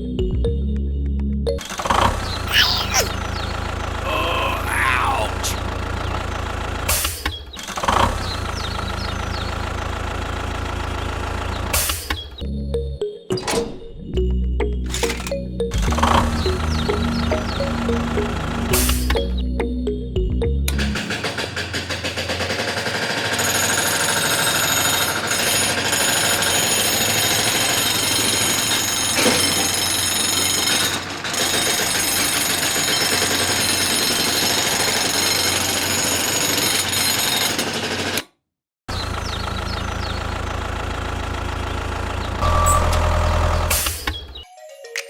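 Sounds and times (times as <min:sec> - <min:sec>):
small machine rattling: 0:20.9 - 0:38.2.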